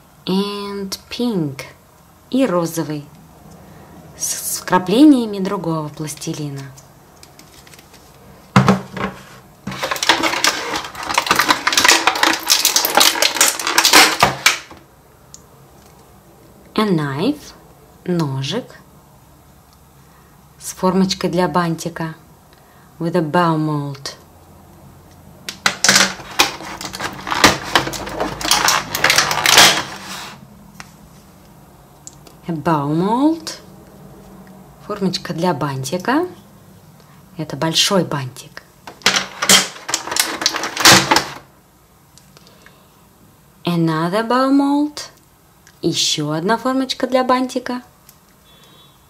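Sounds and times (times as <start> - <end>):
crinkly packaging rustling: 6.3 - 14.7, 25.6 - 30.4, 39.2 - 41.4
plastic toy pieces clattering: 9.7 - 14.7, 25.5 - 30.1, 38.9 - 41.4.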